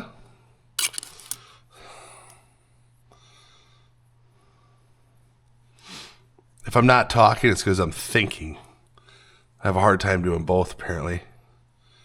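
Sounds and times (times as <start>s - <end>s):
sharp metal clicks: 0.8s - 1.4s.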